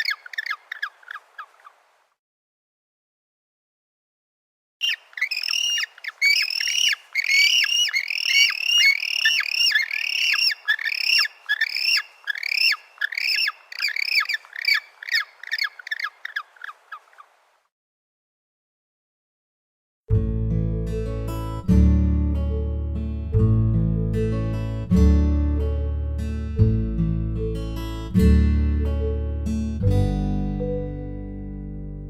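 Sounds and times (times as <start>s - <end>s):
penguin chirping: 4.8s - 17.3s.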